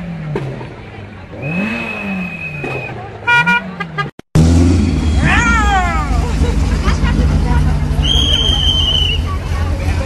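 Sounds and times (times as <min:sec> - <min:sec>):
car engines revving: 0:00.0 - 0:10.0
car horn tooting: 0:02.6 - 0:04.1
loud low engine note: 0:04.4 - 0:10.0.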